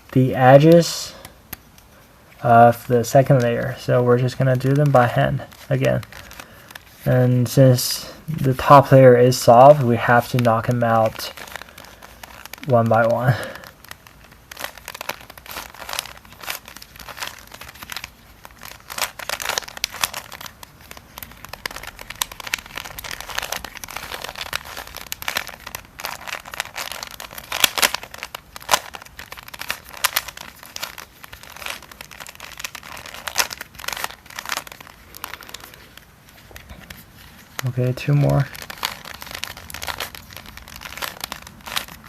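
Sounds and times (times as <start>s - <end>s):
puzzle cube clicking and rattling: 2.6s - 42.0s.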